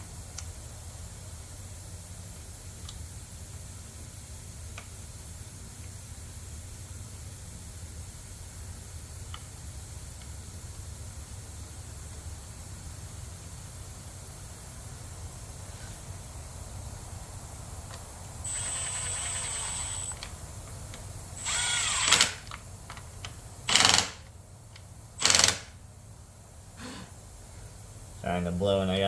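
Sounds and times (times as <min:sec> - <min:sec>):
small mechanical device whirring: 0:18.4 - 0:20.4, 0:21.3 - 0:22.6, 0:23.6 - 0:24.2, 0:25.2 - 0:25.7
loud puffs of blowing: 0:26.7 - 0:27.8.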